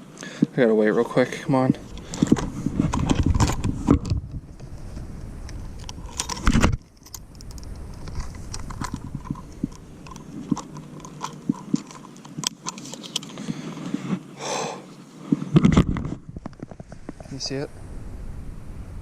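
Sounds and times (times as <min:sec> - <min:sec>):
handling clicks and rattles: 0:01.8 - 0:14.0.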